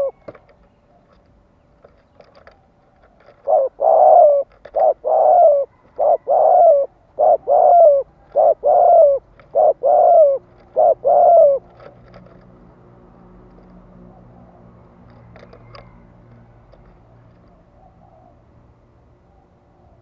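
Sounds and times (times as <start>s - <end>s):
dove cooing: 0.0s - 1.1s, 2.4s - 12.4s, 16.7s - 18.6s.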